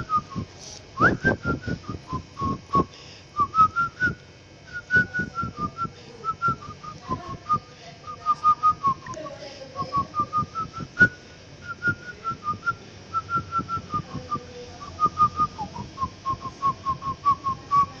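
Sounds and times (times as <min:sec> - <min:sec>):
person whistling a tune: 0:01.0 - 0:07.6, 0:09.9 - 0:14.1.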